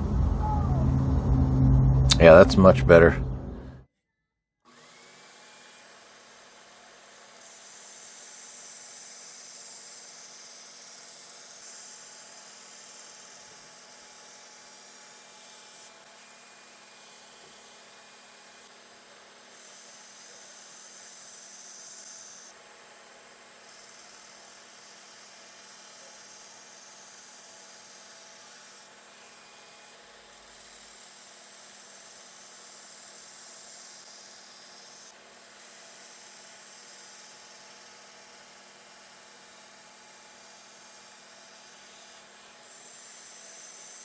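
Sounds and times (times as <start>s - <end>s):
sharpener motor hum: 4.7s - 44.0s
knife grinding on sharpener: 23.2s - 28.9s, 30.4s - 44.0s.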